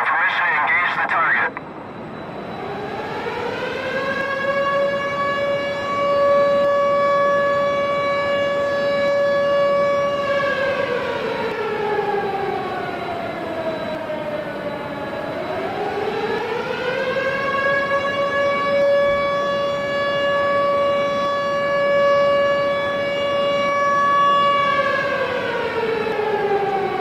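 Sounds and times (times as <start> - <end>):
civil defense siren wailing: 0.0 - 27.0.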